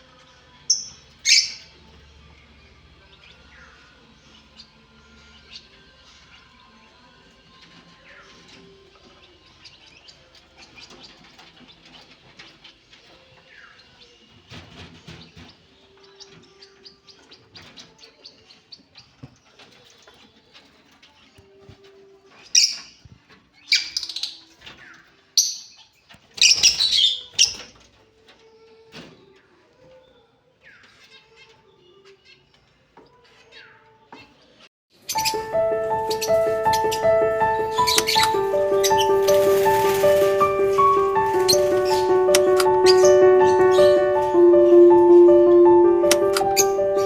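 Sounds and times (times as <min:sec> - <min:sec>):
birds chirping and twittering: 0:00.7 - 0:01.8, 0:07.9 - 0:21.4, 0:32.1 - 0:47.0.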